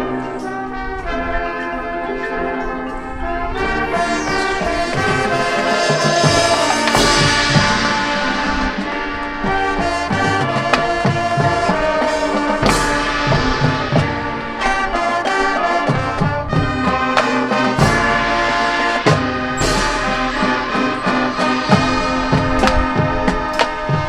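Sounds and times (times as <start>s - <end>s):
brass chords: 0.0s - 24.0s
drum hits: 3.7s - 15.2s.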